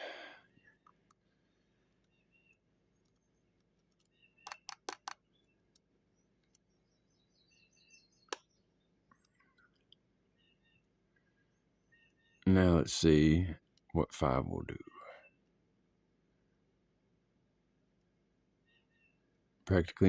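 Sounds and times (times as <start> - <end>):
lock pick clicks: 4.5 - 5.2.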